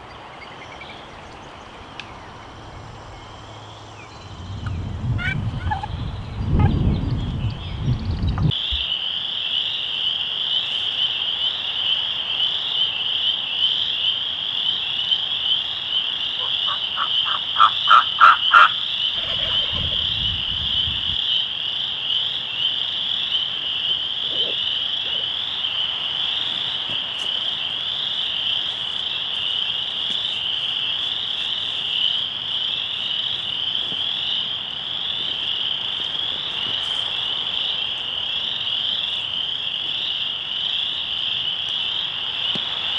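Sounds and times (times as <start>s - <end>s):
low rumble: 2.4s - 8.5s
frogs trilling: 8.5s - 42.9s
louder frog calls: 8.5s - 42.9s.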